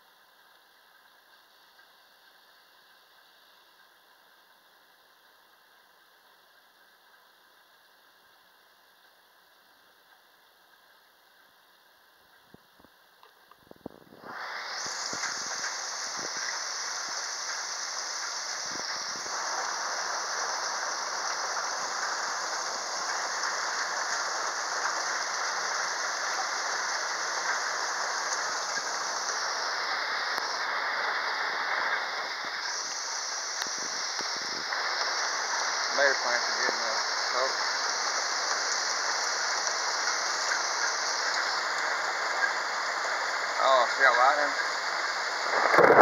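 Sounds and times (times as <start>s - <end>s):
heavy rain pouring: 13.7s - 46.0s.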